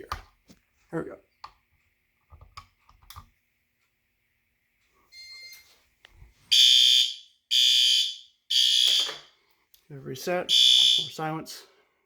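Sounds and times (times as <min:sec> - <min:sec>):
fire alarm horn blasts: 0:06.5 - 0:09.2, 0:10.5 - 0:11.4.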